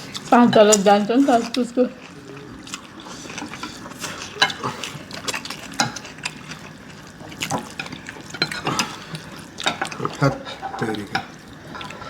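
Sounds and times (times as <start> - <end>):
slurping and chewing noodles: 0.0 - 12.0
utensils clicking on plates: 7.4 - 9.0.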